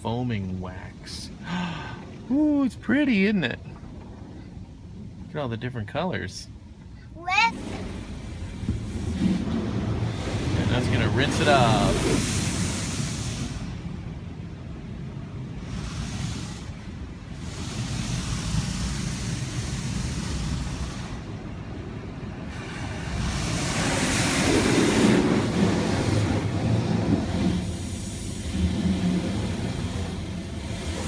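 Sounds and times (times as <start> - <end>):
car wash spray hissing on car: 7.6 - 14.0, 15.4 - 21.5, 22.4 - 31.0.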